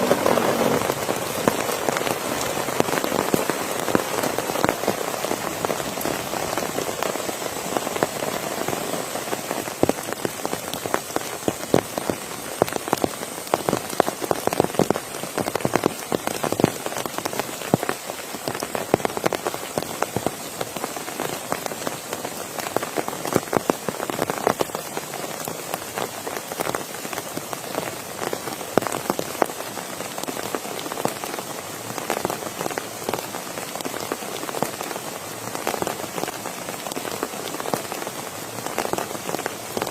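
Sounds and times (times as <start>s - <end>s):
rain drops hitting a surface: 0.0s - 39.9s.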